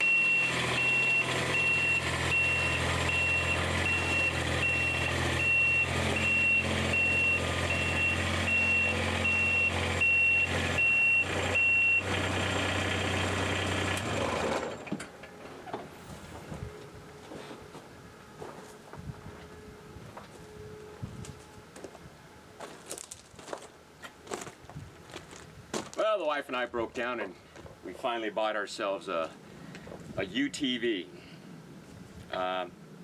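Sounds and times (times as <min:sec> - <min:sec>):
reverse alarm beeping: 0:00.0 - 0:12.1
diesel engine running: 0:00.0 - 0:18.6.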